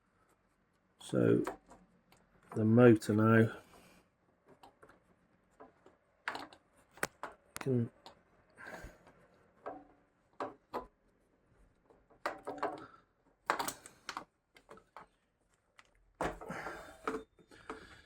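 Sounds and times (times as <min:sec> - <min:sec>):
plastic and metal parts rattling: 0:04.5 - 0:08.2, 0:11.9 - 0:18.0.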